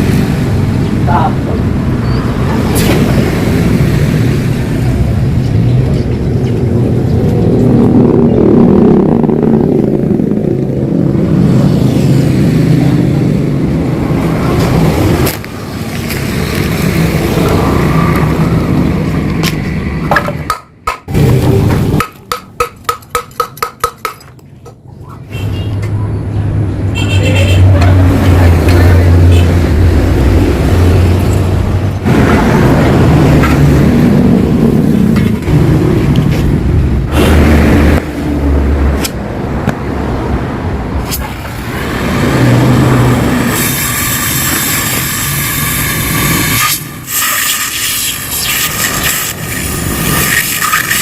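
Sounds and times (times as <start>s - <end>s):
motorcycle engine growling: 0.0s - 19.8s.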